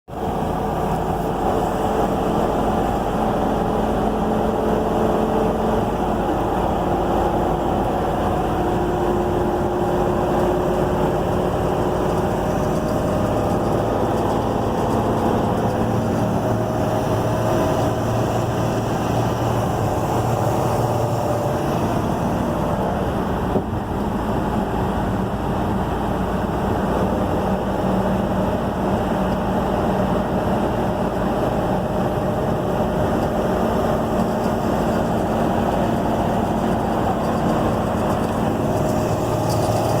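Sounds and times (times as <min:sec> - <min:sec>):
engine ticking: 0:00.1 - 0:24.2, 0:32.5 - 0:40.0
engine running under load: 0:00.1 - 0:40.0.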